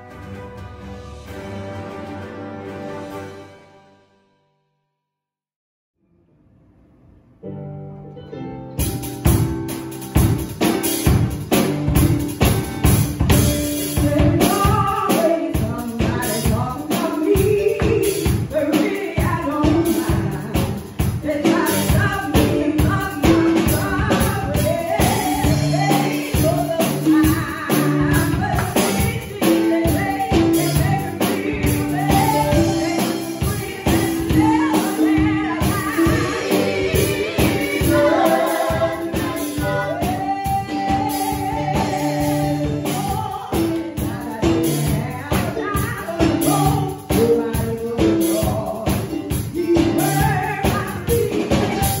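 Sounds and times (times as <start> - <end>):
drums: 8.7 - 52.0
gospel singing: 13.8 - 52.0.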